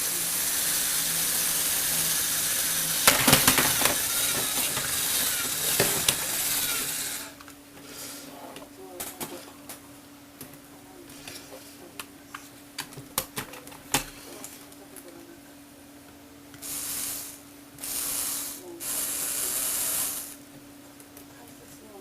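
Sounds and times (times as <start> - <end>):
hissing whirring bursts: 0.0 - 7.4, 16.6 - 20.4.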